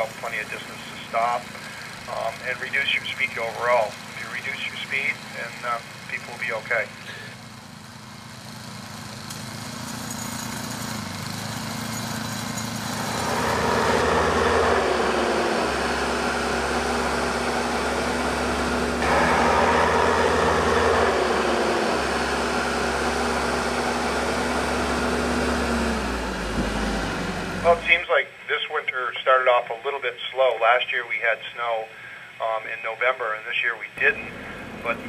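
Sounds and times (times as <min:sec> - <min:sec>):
snow-clearing machine engine running: 0:00.0 - 0:28.1, 0:33.9 - 0:35.0
loud noisy rush: 0:12.7 - 0:28.0.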